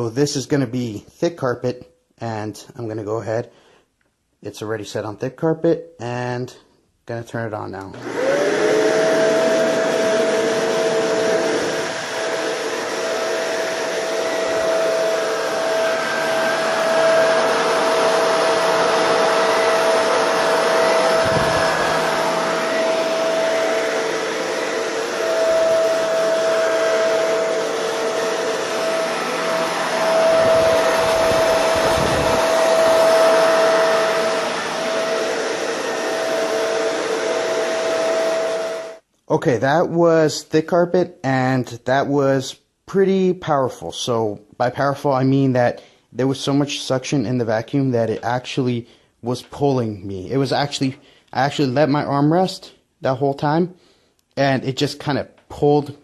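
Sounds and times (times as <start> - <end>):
vacuum cleaner motor whine: 7.9 - 39.0.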